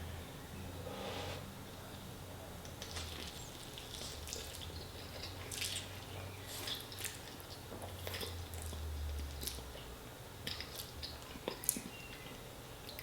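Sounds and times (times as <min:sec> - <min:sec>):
low steady hum: 0:00.0 - 0:13.0
person chewing: 0:02.8 - 0:09.8, 0:10.4 - 0:12.0.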